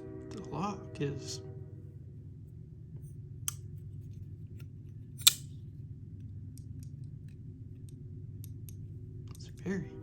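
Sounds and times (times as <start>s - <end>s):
folding knife lock clicking: 5.2s - 5.5s
sharp metallic snap: 5.2s - 5.5s.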